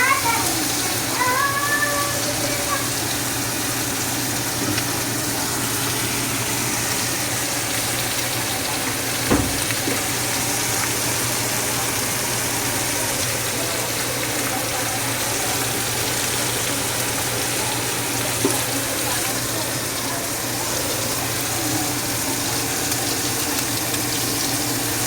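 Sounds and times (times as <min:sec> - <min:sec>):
steak sizzling in a pan: 0:00.0 - 0:25.0
sharp knock: 0:09.3 - 0:10.0.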